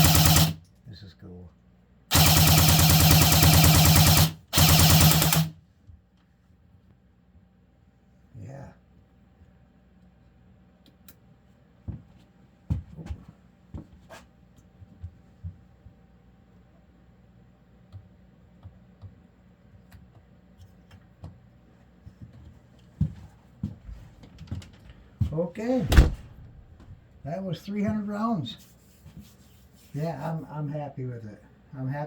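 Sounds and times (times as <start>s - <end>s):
bb gun shots: 0.0s - 0.6s, 2.1s - 5.5s, 25.8s - 26.9s.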